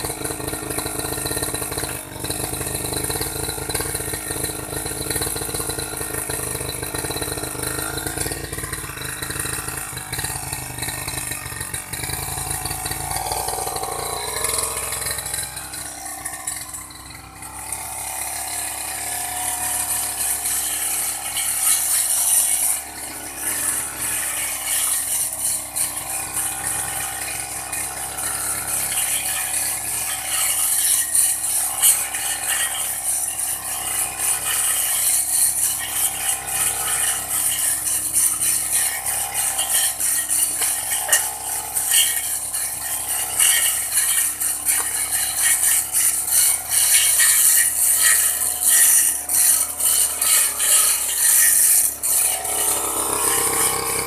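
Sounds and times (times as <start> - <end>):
brush cutter cutting grass: 0.0 - 54.0.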